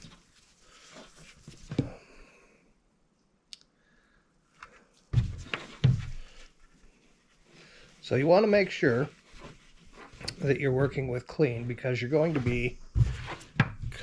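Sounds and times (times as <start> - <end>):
soft rubbing: 0.0 - 2.0, 4.9 - 14.0.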